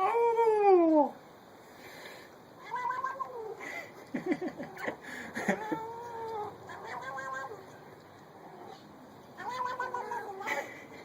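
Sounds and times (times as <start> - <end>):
cat meowing: 2.6 - 3.6, 5.6 - 7.8, 9.4 - 10.5.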